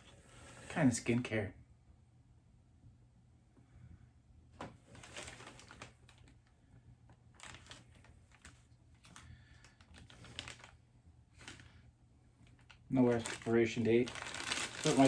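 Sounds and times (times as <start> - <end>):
low room hum: 0.0 - 15.0
package clicking and rustling: 4.9 - 6.4, 7.4 - 10.8, 12.5 - 15.0.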